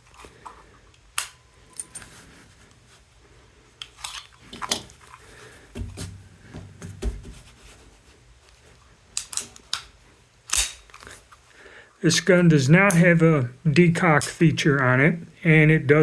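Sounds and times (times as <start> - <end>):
pistol metallic clicks: 1.2 - 1.4, 9.2 - 11.1.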